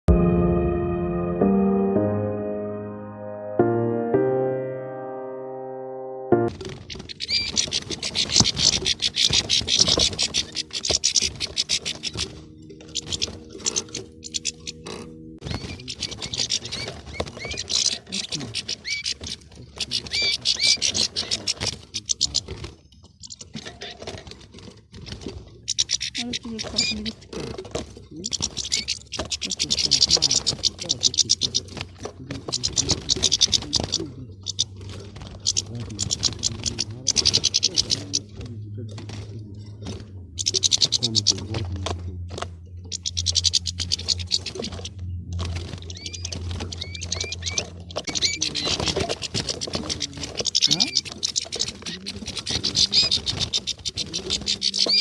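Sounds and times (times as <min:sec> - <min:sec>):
bird call notes: 0:00.1 - 0:19.2, 0:39.7 - 0:55.0
finches twittering: 0:06.5 - 0:55.0
steady low hum: 0:07.2 - 0:17.5, 0:30.2 - 0:53.0.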